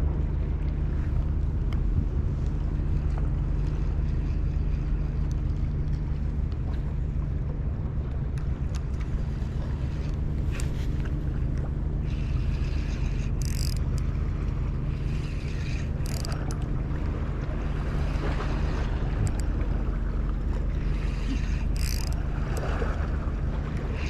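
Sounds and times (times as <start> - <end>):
wind noise on microphone: 0.0 - 4.2
motor humming: 0.0 - 24.0.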